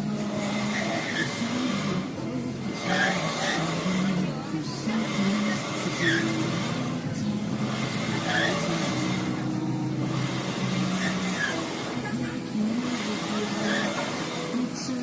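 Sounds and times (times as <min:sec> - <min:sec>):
arcade background din: 0:00.0 - 0:15.0.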